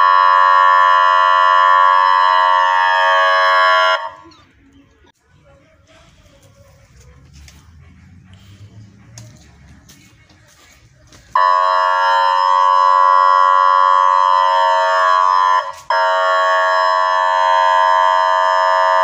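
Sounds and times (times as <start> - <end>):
electronic alarm steady tone: 11.4 - 19.0.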